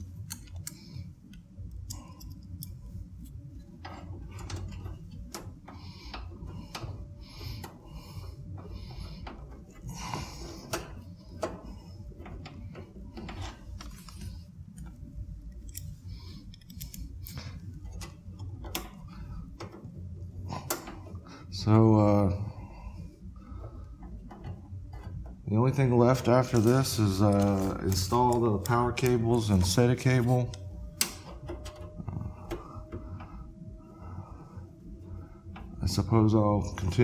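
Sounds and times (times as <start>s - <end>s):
screwdriver clicking on metal frame: 0.0s - 5.5s
low steady hum: 0.0s - 37.0s.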